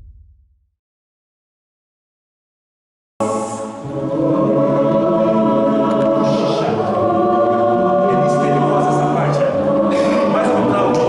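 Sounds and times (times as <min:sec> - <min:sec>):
choir singing held chords: 0:03.2 - 0:11.0.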